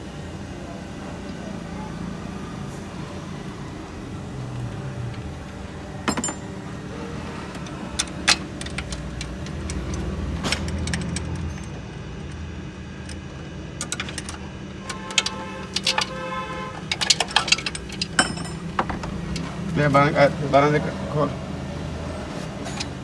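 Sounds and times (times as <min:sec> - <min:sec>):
metal tools clinking on engine parts: 0:04.4 - 0:11.8, 0:13.8 - 0:20.7, 0:22.1 - 0:23.0.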